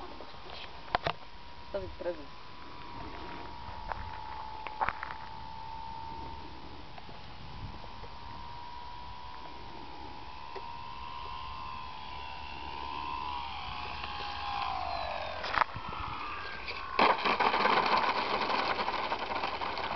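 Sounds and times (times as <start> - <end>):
model plane motor whining: 2.5 - 19.9
loud rough rattling: 16.5 - 19.9.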